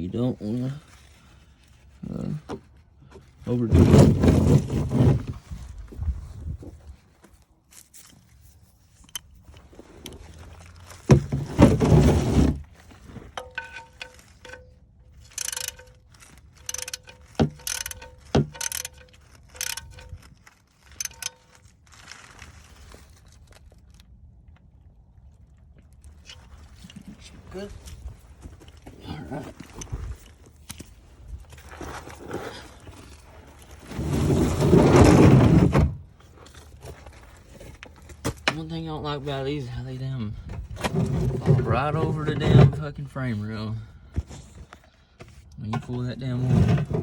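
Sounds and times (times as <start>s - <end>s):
scraping rustle: 0.2s - 24.1s, 24.8s - 47.0s
metal tools clinking: 13.0s - 21.9s.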